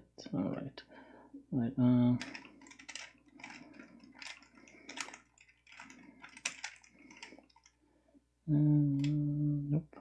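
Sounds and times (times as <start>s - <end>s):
puzzle cube plastic clicks: 2.2s - 7.8s.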